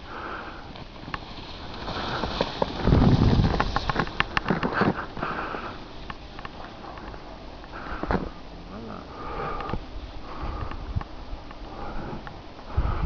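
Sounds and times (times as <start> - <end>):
heavy breathing: 4.7 - 5.9, 7.6 - 11.0, 11.6 - 13.0.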